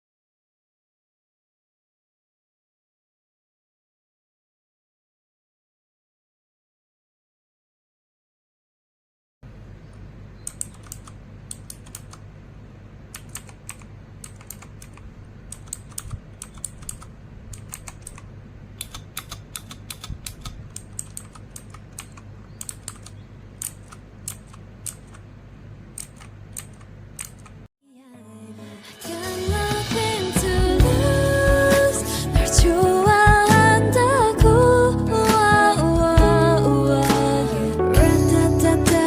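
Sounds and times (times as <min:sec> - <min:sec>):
low steady hum: 0:09.4 - 0:27.7
mechanical keyboard clicks: 0:10.4 - 0:12.2, 0:13.1 - 0:18.2, 0:18.8 - 0:25.2, 0:26.0 - 0:27.6.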